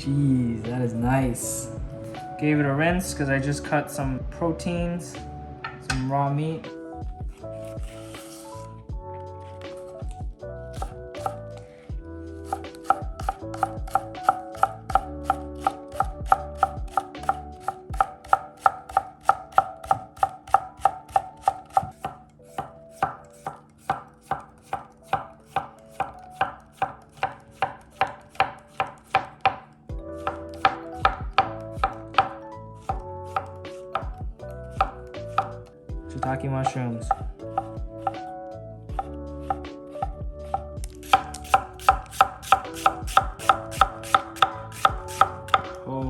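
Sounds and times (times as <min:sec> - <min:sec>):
background music: 0:00.0 - 0:46.0
knife chopping on cutting board: 0:10.8 - 0:11.4, 0:12.4 - 0:34.2, 0:34.8 - 0:35.6, 0:38.9 - 0:45.8.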